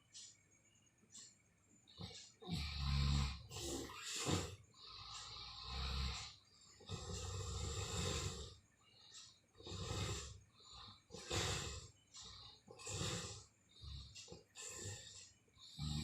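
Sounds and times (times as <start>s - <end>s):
person snoring heavily: 2.4s - 8.6s, 9.6s - 16.0s.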